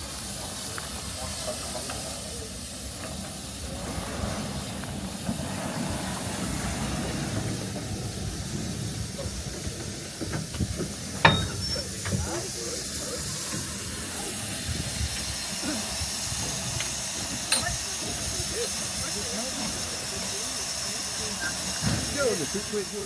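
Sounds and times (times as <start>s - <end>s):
steam hissing: 0.0s - 23.0s.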